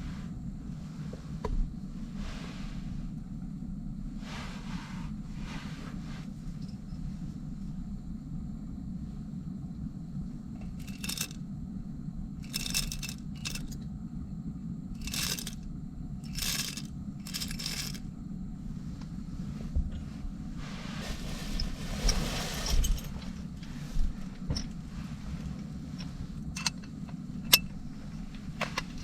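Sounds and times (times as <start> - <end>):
steady low rumble: 0.0 - 21.8
scraping rustling handling noise: 10.6 - 11.4, 12.4 - 13.8, 15.0 - 15.6, 16.2 - 18.1, 18.8 - 29.0.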